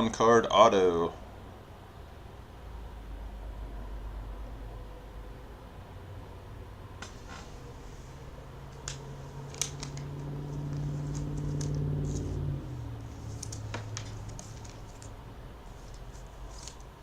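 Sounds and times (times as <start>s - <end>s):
steady low hum: 0.0s - 17.0s
trading cards being handled: 7.0s - 17.0s.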